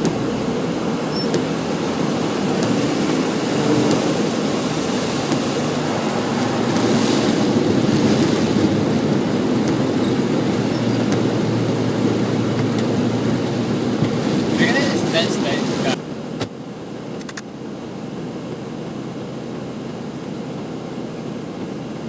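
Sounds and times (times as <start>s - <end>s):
floodwater rushing: 0.0s - 16.0s.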